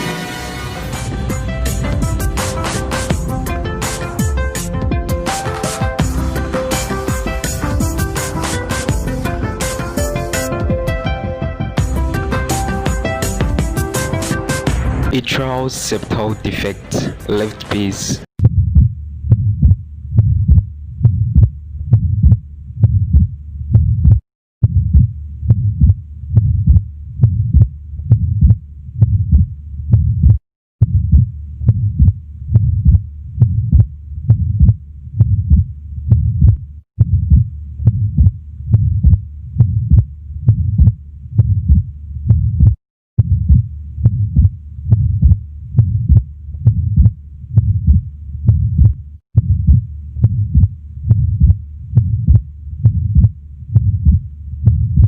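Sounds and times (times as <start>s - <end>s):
heart murmur: 18.4s - 55.0s
heartbeats through a stethoscope: 18.4s - 55.0s.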